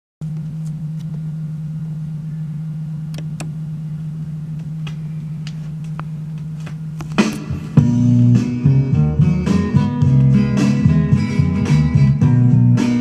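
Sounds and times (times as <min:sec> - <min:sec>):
turntable low hum: 0:00.2 - 0:13.0
vinyl clicks and pops: 0:03.1 - 0:03.6, 0:04.6 - 0:07.8.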